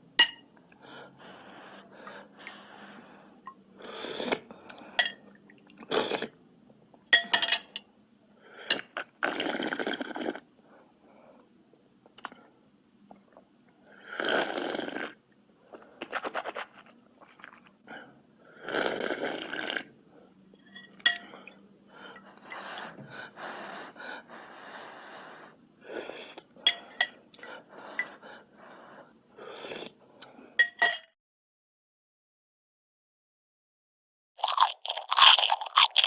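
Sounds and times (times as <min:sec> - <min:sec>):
utensils clinking on a dish: 0:07.2 - 0:07.8, 0:20.6 - 0:21.4, 0:30.6 - 0:31.1
mouth eating noises: 0:15.8 - 0:17.8, 0:34.4 - 0:36.0.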